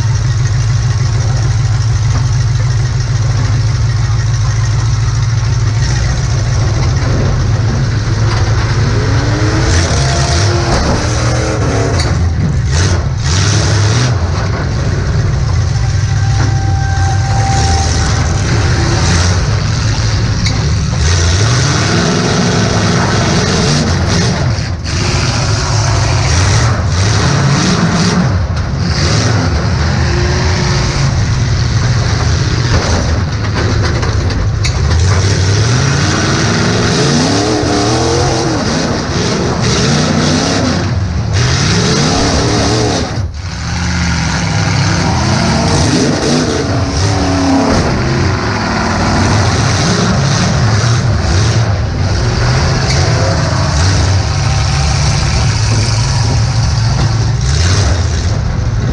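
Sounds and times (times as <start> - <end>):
car engine revving: 0.0 - 58.9.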